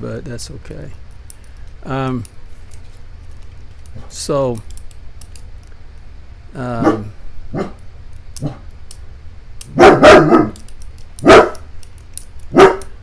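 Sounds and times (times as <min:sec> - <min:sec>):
dog barking loudly: 0:06.8 - 0:07.8, 0:09.7 - 0:10.6, 0:11.2 - 0:11.7, 0:12.5 - 0:13.0.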